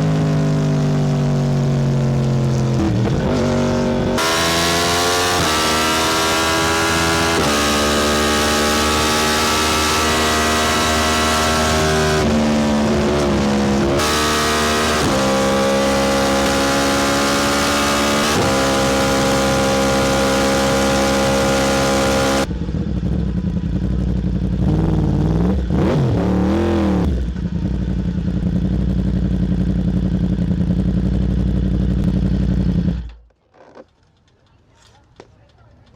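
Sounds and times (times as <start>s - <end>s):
motorcycle engine revving: 0.0s - 33.3s
motorcycle engine idling: 22.4s - 25.7s, 27.1s - 33.3s.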